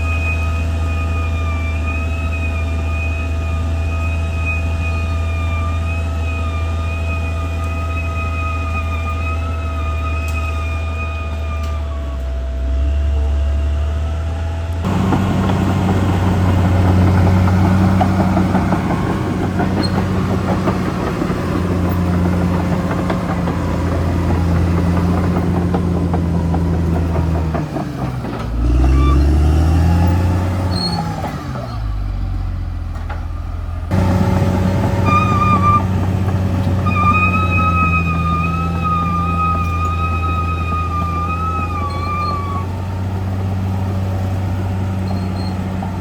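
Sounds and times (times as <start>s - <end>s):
bulldozer diesel engine running: 0.0s - 46.0s
steel tracks clanking: 14.6s - 46.0s.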